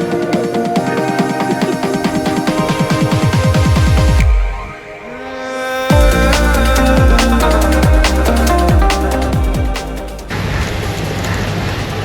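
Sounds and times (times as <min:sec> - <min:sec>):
electronic music with synth: 0:00.0 - 0:12.0.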